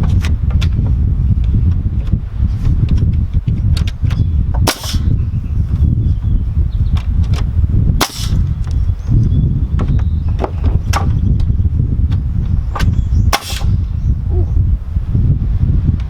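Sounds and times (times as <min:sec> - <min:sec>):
steady low rumble: 0:00.0 - 0:16.0
nail gun shots: 0:04.6 - 0:05.2, 0:08.0 - 0:08.7, 0:13.3 - 0:13.9.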